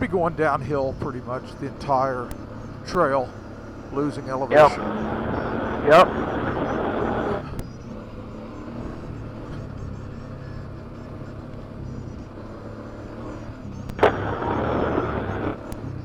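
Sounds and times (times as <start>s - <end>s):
atv engine running: 1.5s - 15.8s
rush of noise: 4.5s - 7.5s, 14.0s - 15.7s.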